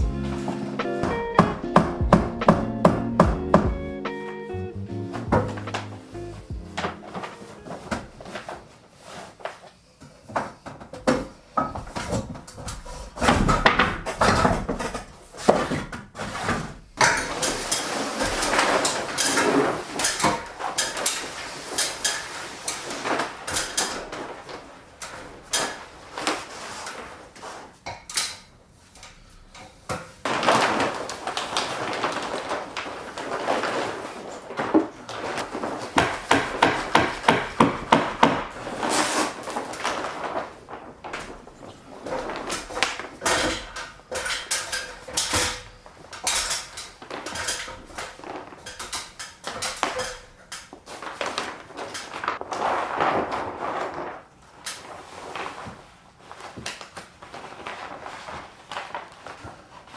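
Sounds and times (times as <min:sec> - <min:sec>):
hammer knocking on wood: 0:01.0 - 0:03.9, 0:35.9 - 0:38.6.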